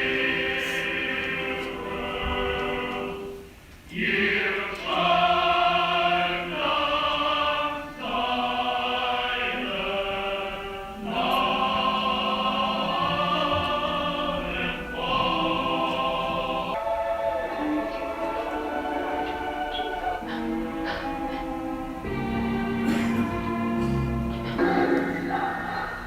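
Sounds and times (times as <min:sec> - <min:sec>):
choir singing sustained chords: 0:00.0 - 0:26.0.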